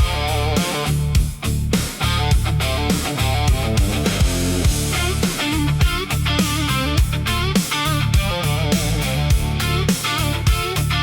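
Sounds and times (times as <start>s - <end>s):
instrumental blues-rock: 0.0s - 11.0s.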